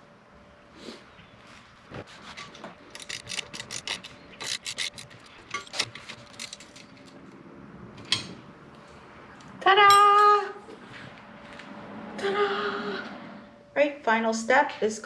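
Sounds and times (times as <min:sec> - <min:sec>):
wrench clicking and scraping: 0:02.4 - 0:07.1.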